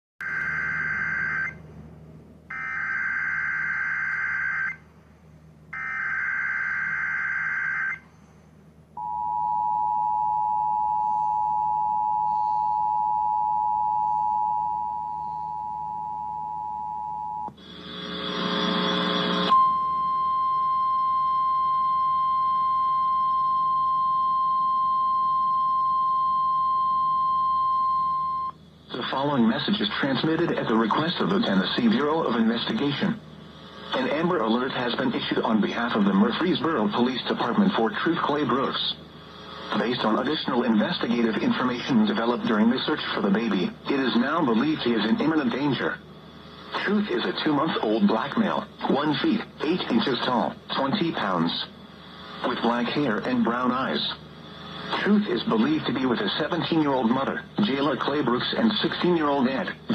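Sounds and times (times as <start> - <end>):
two-tone attention signal: 19.3 - 28.6.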